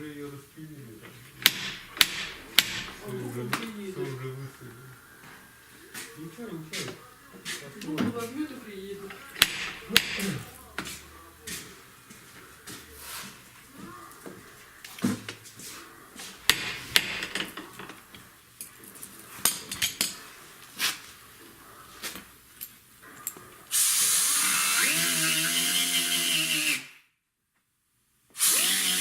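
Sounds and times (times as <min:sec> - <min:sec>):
tools clicking and knocking: 0:01.4 - 0:03.7, 0:09.2 - 0:10.5, 0:16.4 - 0:20.3
electric power tool spinning up: 0:23.7 - 0:27.0, 0:28.4 - 0:29.0.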